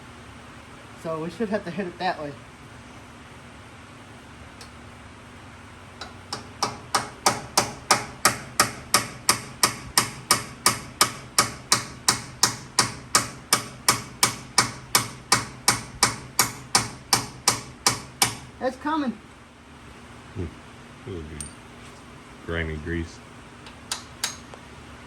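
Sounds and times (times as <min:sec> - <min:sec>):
hammer tapping metal nut: 0:06.0 - 0:18.5, 0:23.6 - 0:24.4.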